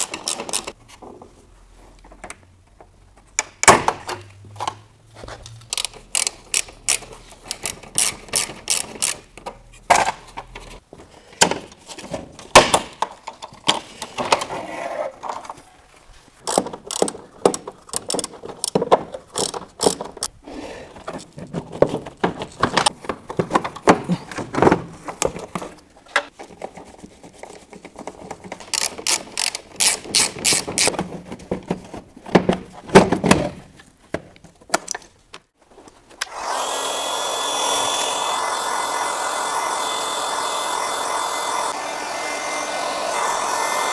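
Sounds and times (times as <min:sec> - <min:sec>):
hand tool rapid clicking: 0:00.0 - 0:00.8, 0:05.7 - 0:09.3, 0:16.4 - 0:20.3, 0:28.6 - 0:30.9
plastic and metal parts knocking: 0:16.4 - 0:20.3, 0:21.0 - 0:35.4.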